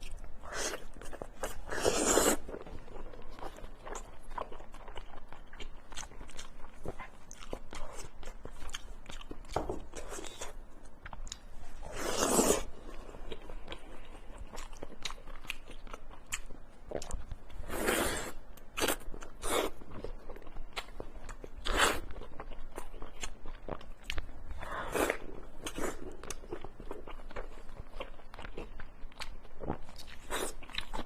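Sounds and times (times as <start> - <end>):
chewing with wet mouth clicks: 25.1 - 31.0.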